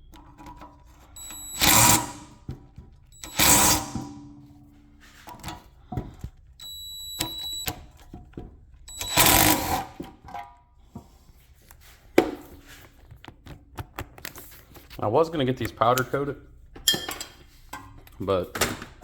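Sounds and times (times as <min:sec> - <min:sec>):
power tool bursts: 0:01.2 - 0:02.4, 0:03.2 - 0:04.4, 0:08.9 - 0:10.0
metal clinks and knocks: 0:16.8 - 0:18.0.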